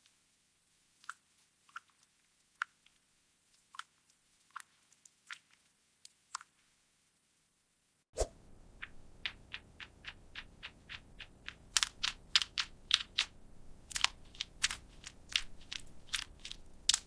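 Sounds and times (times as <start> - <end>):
typing on computer keyboard: 9.2 - 17.0.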